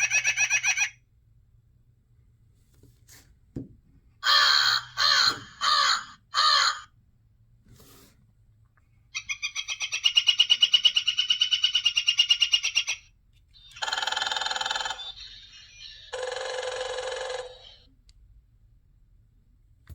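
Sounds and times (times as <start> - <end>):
harsh bird calls: 4.2 - 6.9.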